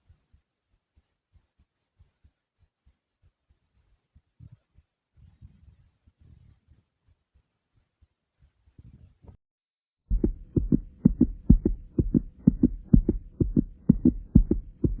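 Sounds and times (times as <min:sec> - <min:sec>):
heartbeat thumps: 0:10.1 - 0:15.0.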